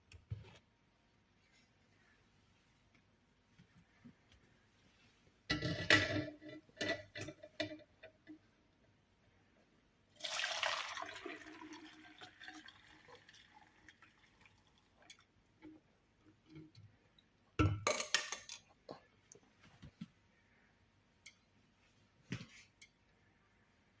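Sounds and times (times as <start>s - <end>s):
liquid pouring: 10.2s - 15.3s.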